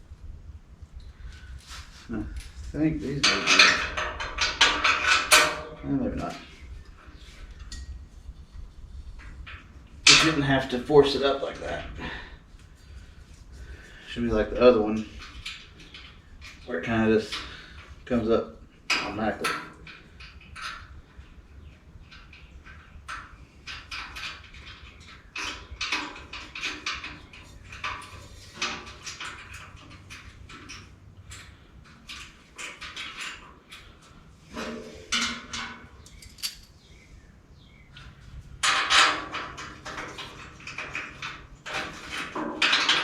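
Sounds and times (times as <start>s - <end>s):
metal scraping rattle: 1.6s - 12.2s, 13.9s - 36.9s, 37.9s - 43.0s
metal clinking and clattering: 3.1s - 5.8s, 22.1s - 36.8s, 38.0s - 43.0s.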